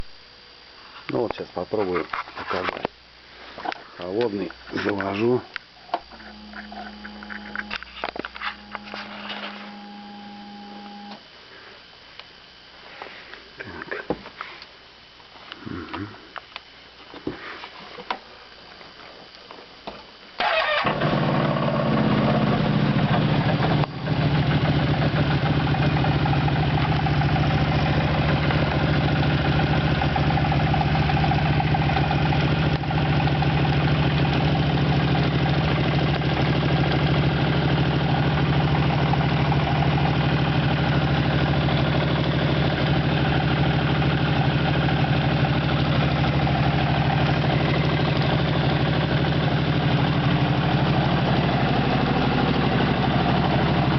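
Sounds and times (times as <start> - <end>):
engine starting and idling: 20.4 - 29.4.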